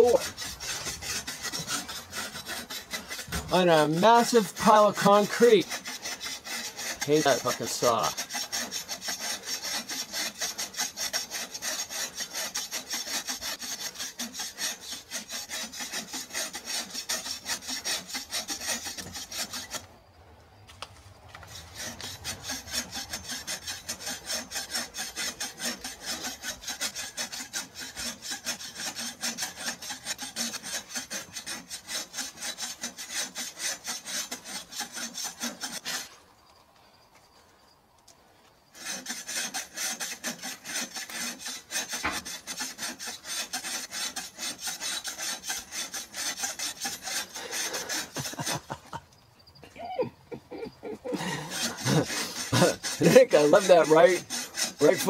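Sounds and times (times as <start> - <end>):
hand saw cutting wood: 0.0 - 20.0, 21.3 - 36.2, 38.7 - 49.0, 50.6 - 55.0.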